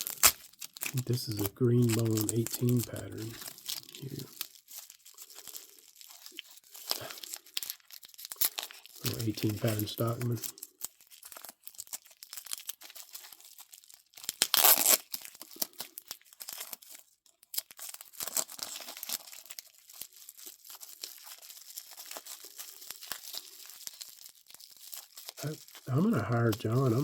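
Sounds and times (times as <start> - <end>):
loud paper rip: 0.0 - 3.6
packing material crinkling: 0.0 - 27.0.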